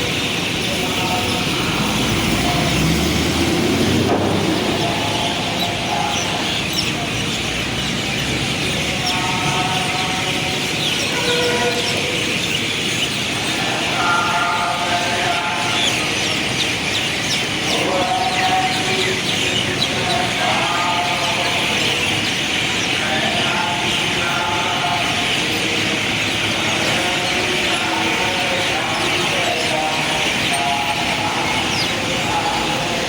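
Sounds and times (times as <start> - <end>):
birds chirping: 0.0 - 33.0
steady traffic noise: 0.0 - 33.0
heavy vehicle rumbling past: 0.7 - 10.0.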